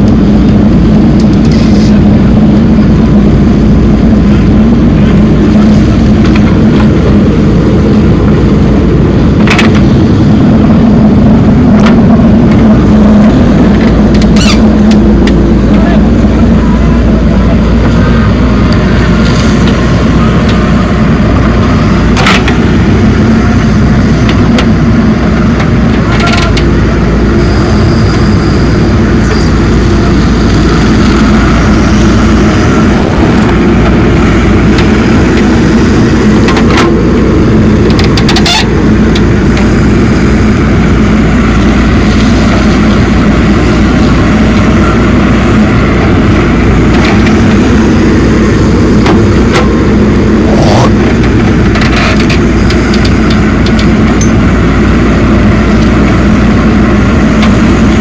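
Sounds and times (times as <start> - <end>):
heavy diesel engine running: 0.0 - 58.0.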